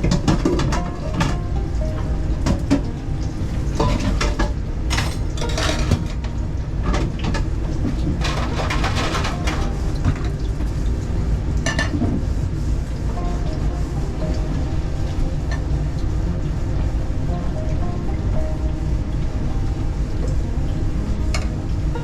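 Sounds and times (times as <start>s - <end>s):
steady low rumble: 0.0s - 22.0s
cookware and cutlery clattering: 3.8s - 6.2s, 8.2s - 10.4s.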